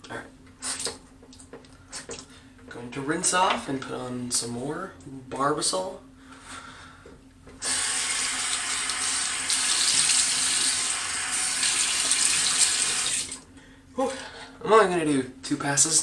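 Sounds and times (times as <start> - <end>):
sink tap running: 7.6 - 13.4.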